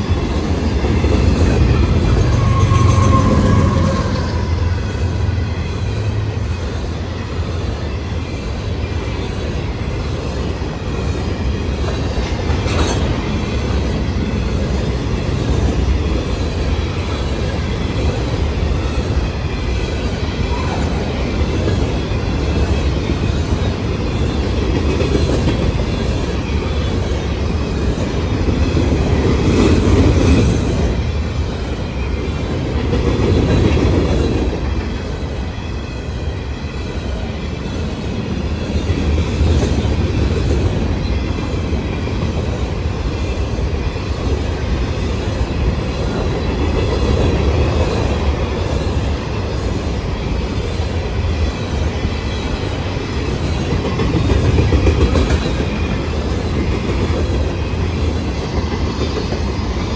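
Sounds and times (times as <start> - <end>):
train wheels rumbling on rail: 0.0 - 59.9
faint wheel squeal: 2.0 - 5.4.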